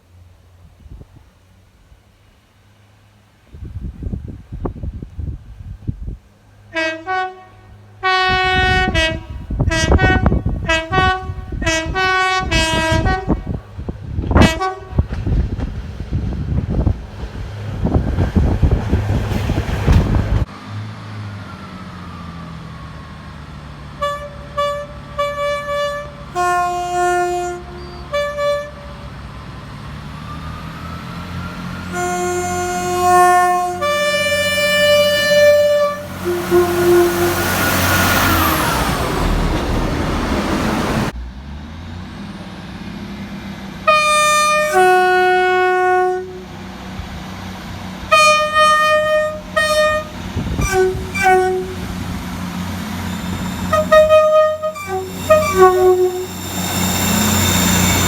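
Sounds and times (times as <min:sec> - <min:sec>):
train rushing past: 0:02.6 - 0:58.0
train horn blasts: 0:06.7 - 0:13.7, 0:14.3 - 0:15.3, 0:24.0 - 0:29.1, 0:31.8 - 0:39.4, 0:43.8 - 0:46.6, 0:48.1 - 0:52.2, 0:53.4 - 0:58.0.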